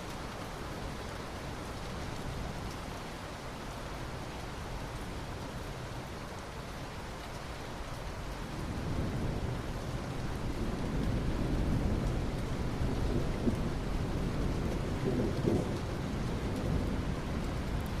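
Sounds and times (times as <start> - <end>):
steady rain: 0.0 - 18.0
thunder rumbling: 10.5 - 17.9.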